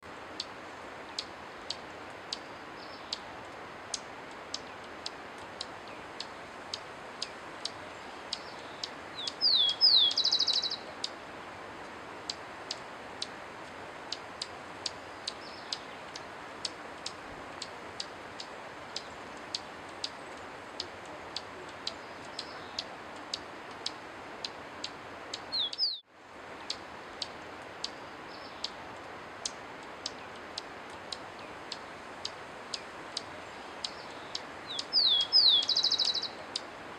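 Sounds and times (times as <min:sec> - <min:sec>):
steady hiss: 0:00.0 - 0:36.9
songbird calling: 0:00.4 - 0:03.3, 0:03.9 - 0:11.2, 0:14.1 - 0:28.8, 0:29.4 - 0:36.7
buzzy bird trill: 0:08.4 - 0:10.9, 0:33.9 - 0:36.4.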